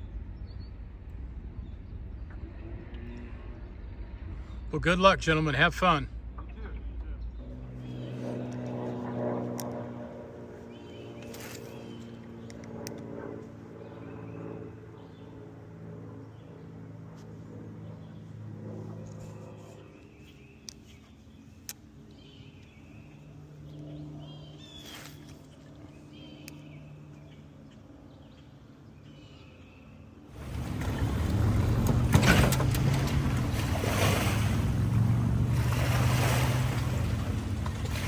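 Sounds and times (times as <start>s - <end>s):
outboard motor running: 30.3s - 38.0s.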